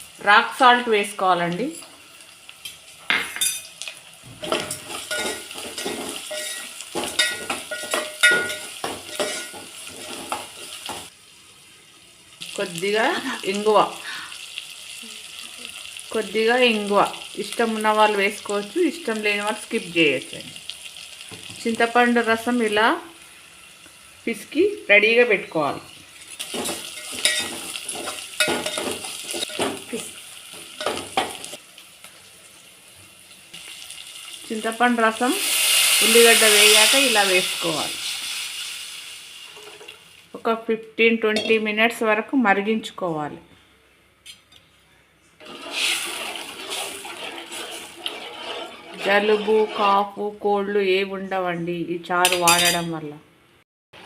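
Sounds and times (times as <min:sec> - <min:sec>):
faint sizzle: 0:00.0 - 0:42.0
metal spoon scraping a pan: 0:04.4 - 0:11.0, 0:26.2 - 0:30.0, 0:45.4 - 0:50.3, 0:52.2 - 0:52.9.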